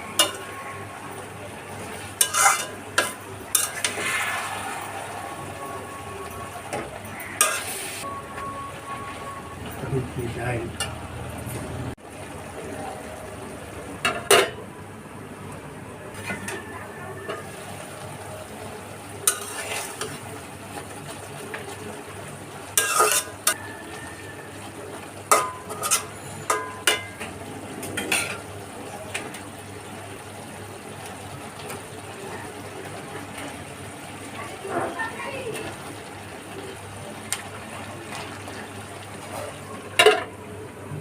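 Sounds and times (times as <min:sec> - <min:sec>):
frying sizzle: 0:00.0 - 0:41.0
utensil scraping a pan: 0:02.1 - 0:05.2, 0:19.3 - 0:20.2, 0:22.8 - 0:23.5, 0:25.6 - 0:26.7.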